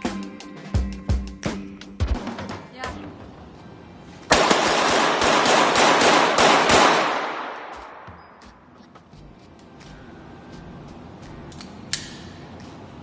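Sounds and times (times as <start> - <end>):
gunshot echo: 4.3 - 8.0
rapid gunshots: 4.3 - 8.0.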